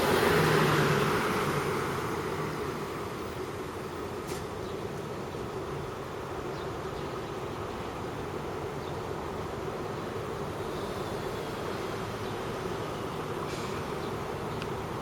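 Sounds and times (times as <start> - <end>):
vehicle passing: 0.0 - 3.2
hum of engines: 0.0 - 15.0.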